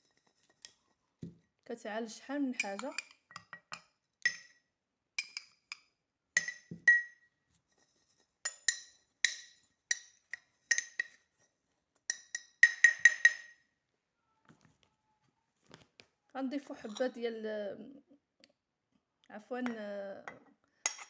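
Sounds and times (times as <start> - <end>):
spoon clinking on glass jar: 2.6 - 4.6, 5.2 - 7.3, 8.4 - 11.2, 12.1 - 13.6.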